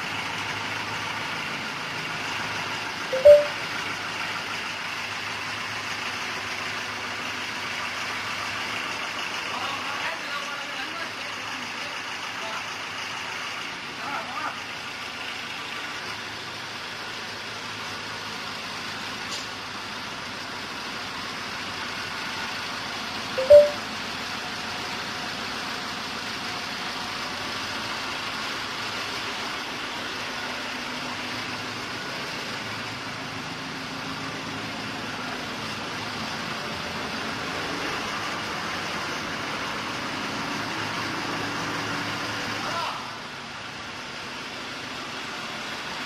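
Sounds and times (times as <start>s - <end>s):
diesel generator engine running: 0.0s - 46.0s
short loud tone: 3.1s - 3.6s, 23.4s - 23.8s.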